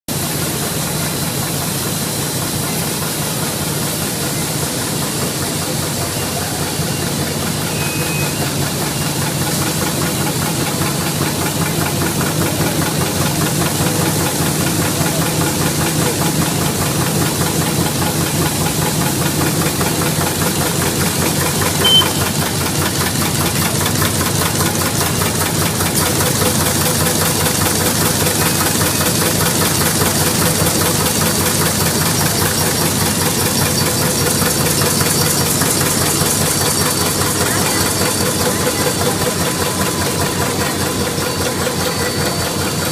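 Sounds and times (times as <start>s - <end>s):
brief high tone: 21.8s - 22.5s.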